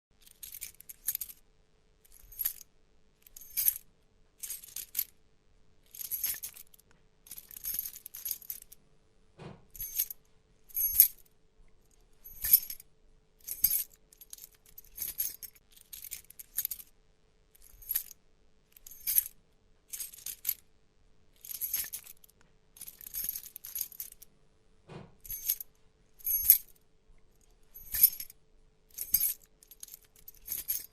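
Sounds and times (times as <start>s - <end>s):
metal keys jangling: 0.2s - 1.4s, 2.1s - 3.8s, 4.4s - 5.1s, 5.8s - 8.8s, 9.7s - 11.2s, 12.2s - 12.8s, 13.4s - 16.9s, 17.6s - 18.2s, 18.8s - 20.6s, 21.4s - 24.2s, 25.2s - 26.8s, 27.4s - 30.9s.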